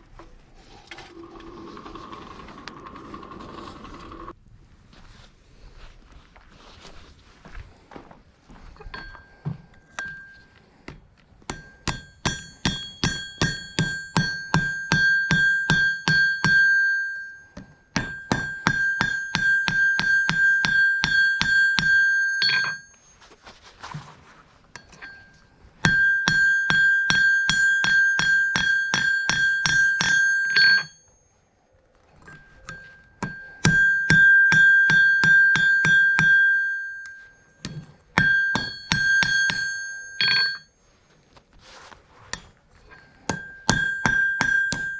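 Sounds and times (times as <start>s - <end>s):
hammer striking steel on anvil: 9.9s - 10.5s, 11.5s - 23.0s, 24.8s - 31.0s, 32.3s - 40.7s, 42.3s - 44.9s.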